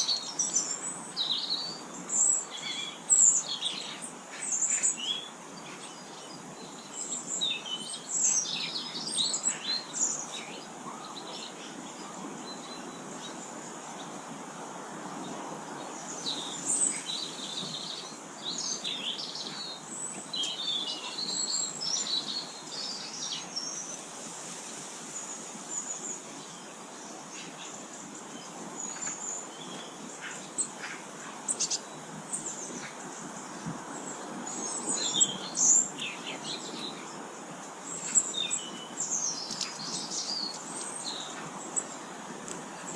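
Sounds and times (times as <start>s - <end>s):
outdoor background hiss: 0.0s - 42.9s
songbirds chirping: 0.0s - 42.9s.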